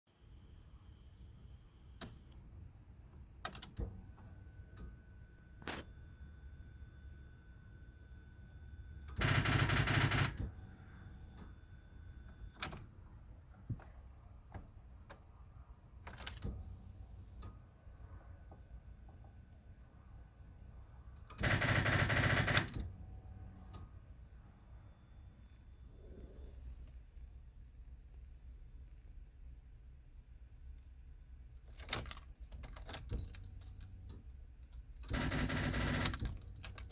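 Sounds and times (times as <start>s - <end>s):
car keys jangling: 16.0s - 16.7s, 31.6s - 35.1s, 36.0s - 36.9s.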